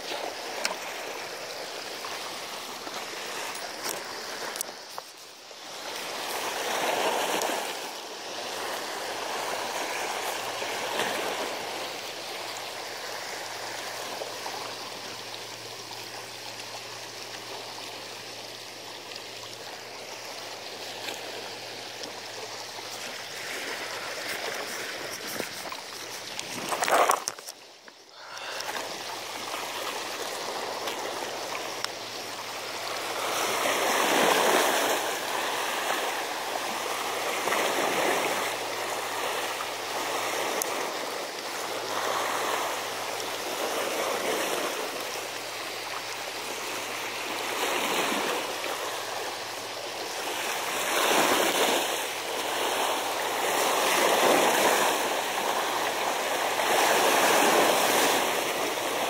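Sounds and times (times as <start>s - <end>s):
seawater washing against embankment: 0.0s - 59.0s.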